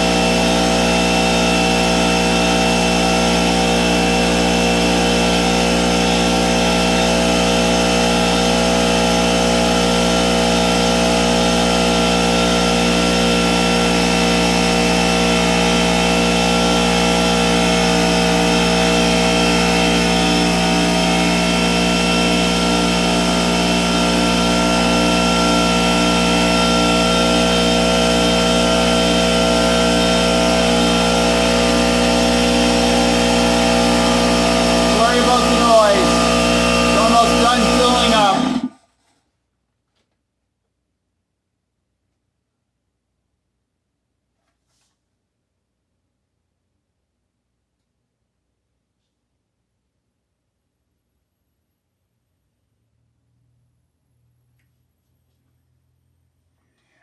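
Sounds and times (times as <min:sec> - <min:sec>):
air compressor running: 0:00.0 - 0:38.8.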